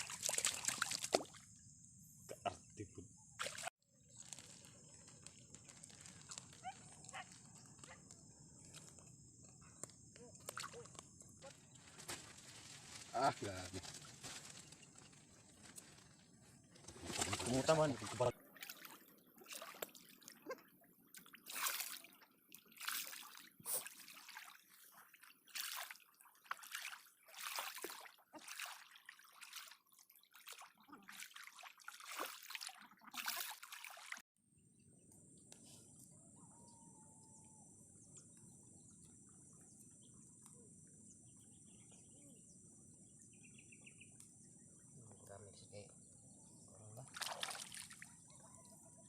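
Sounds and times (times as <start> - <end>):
floodwater splashing and sloshing: 0.0 - 1.5, 3.4 - 7.9, 16.8 - 34.3, 47.0 - 48.4.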